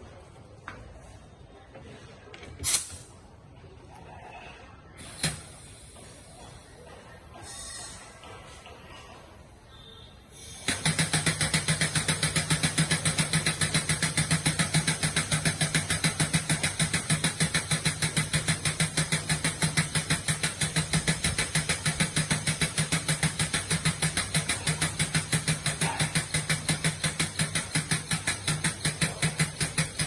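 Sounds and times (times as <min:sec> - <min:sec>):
air valve exhausting pulses: 0:04.9 - 0:08.5, 0:09.9 - 0:30.0
air diaphragm pump running: 0:05.0 - 0:08.2, 0:10.4 - 0:30.0.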